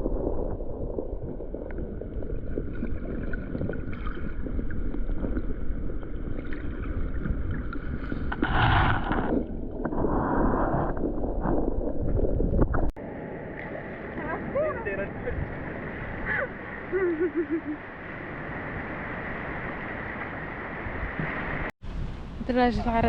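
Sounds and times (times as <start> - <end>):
seawater moving and splashing: 0.0 - 12.9
wind rumbling on microphone: 0.0 - 23.0.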